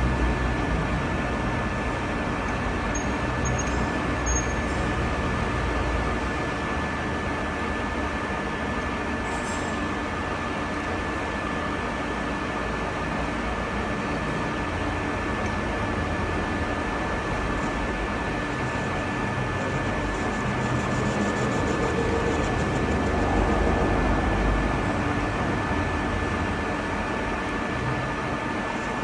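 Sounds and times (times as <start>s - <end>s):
thin mechanical whine: 0.0s - 10.2s, 15.4s - 29.0s
metal lathe humming: 16.4s - 27.3s.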